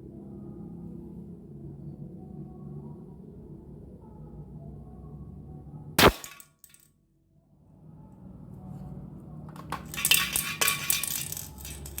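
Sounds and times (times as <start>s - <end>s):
light metal clinking rattles: 9.5s - 12.0s.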